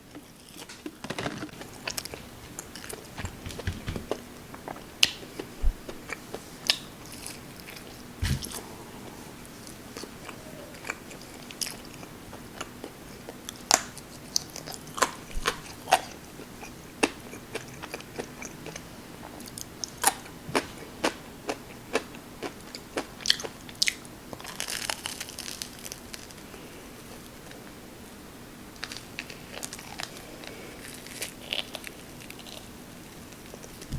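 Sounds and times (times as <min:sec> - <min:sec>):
person chewing crunchy food: 0:00.1 - 0:26.5, 0:28.8 - 0:33.9.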